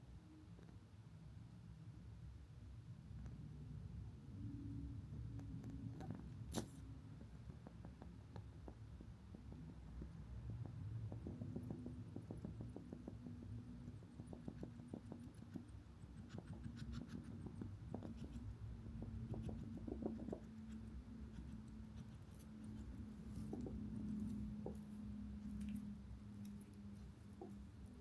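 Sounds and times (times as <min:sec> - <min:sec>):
steady low hum: 0:02.7 - 0:28.0
hedgehog sniffing: 0:11.2 - 0:28.0.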